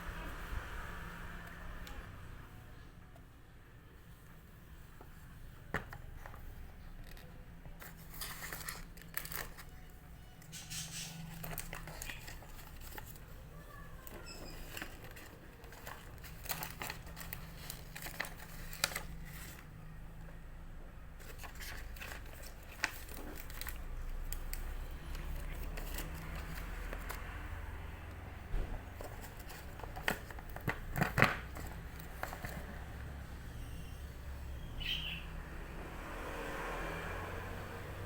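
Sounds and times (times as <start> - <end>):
packaging crinkling and tearing: 7.0 - 10.0, 11.2 - 13.4, 14.0 - 19.7, 21.2 - 27.4, 28.9 - 32.8.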